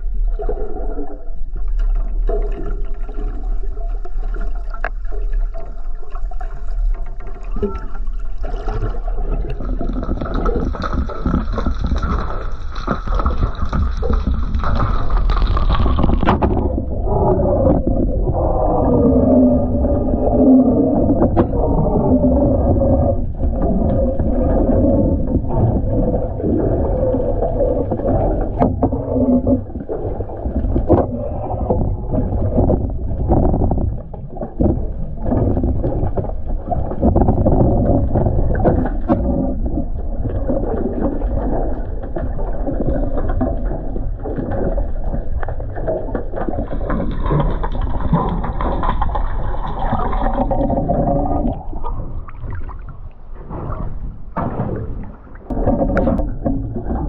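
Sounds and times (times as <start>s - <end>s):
low boat rumble: 0.0s - 57.0s
water gurgling: 0.0s - 57.0s
knocks against hull: 15.4s - 16.7s, 53.4s - 57.0s.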